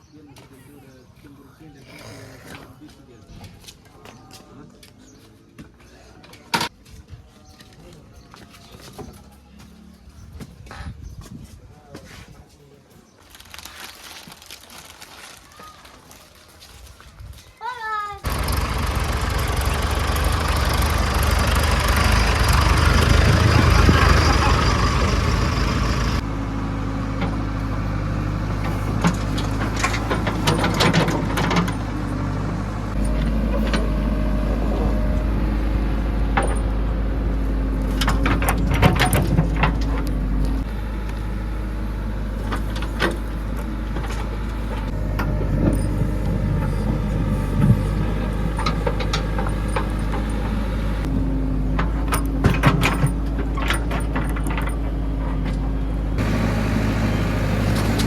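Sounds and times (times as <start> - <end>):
diesel engine running: 18.2 - 58.0
clanks and knocks: 28.6 - 33.9, 38.0 - 40.2, 44.0 - 51.1, 51.8 - 55.8.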